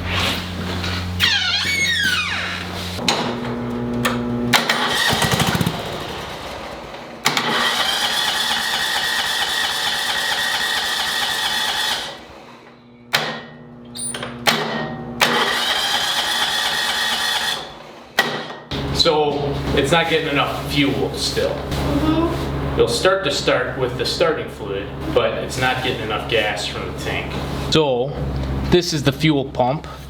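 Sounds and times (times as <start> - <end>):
lawn tractor engine starting: 1.2 - 12.7, 14.5 - 21.9.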